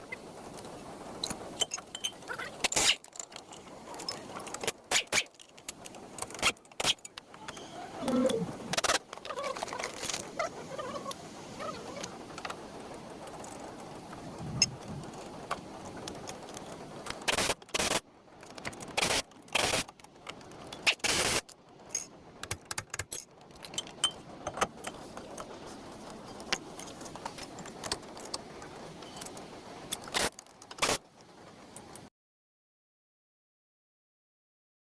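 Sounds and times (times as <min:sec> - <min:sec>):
background hiss: 0:00.0 - 0:32.1
metal tools clinking: 0:01.2 - 0:07.8, 0:18.5 - 0:31.0.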